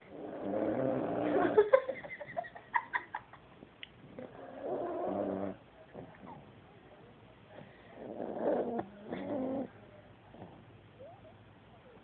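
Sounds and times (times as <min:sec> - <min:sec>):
dog snoring: 0:00.0 - 0:01.6, 0:04.1 - 0:06.5, 0:07.8 - 0:10.7.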